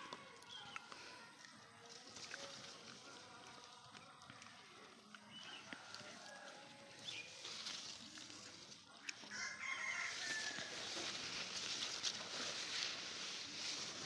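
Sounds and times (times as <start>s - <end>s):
rooster crowing: 9.3s - 11.0s.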